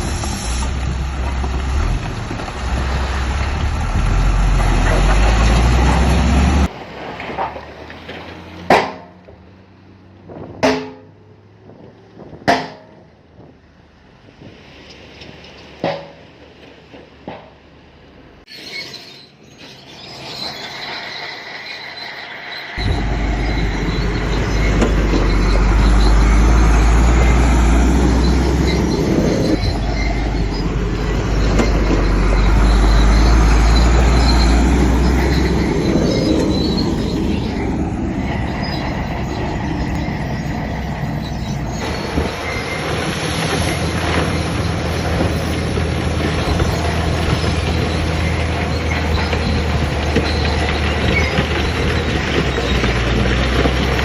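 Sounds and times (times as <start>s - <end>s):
steel tracks squealing and clanking: 0.0s - 9.2s, 18.4s - 54.0s
diesel engine under load: 0.0s - 54.0s.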